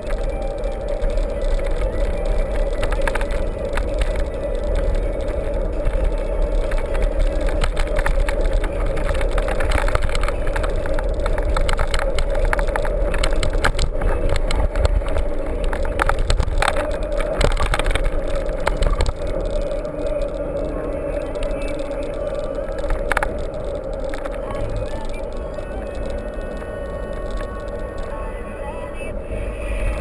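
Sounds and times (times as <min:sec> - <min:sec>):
bike rattling clicks: 0:00.0 - 0:28.3
bike rumbling over rough trail: 0:00.0 - 0:30.0.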